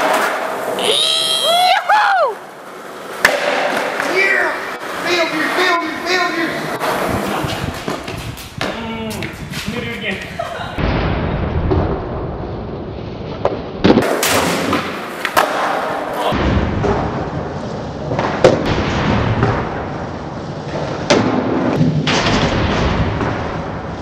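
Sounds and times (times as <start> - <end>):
skateboard wheels rolling on pavement: 0.0 - 10.8, 12.7 - 24.0
skateboard popping and landing clacks: 3.1 - 4.2, 13.4 - 17.1.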